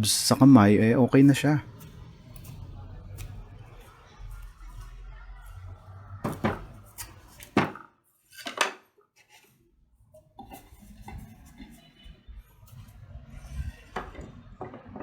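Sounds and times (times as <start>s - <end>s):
handling noise: 6.2s - 7.8s
hard objects knocking: 6.2s - 7.8s.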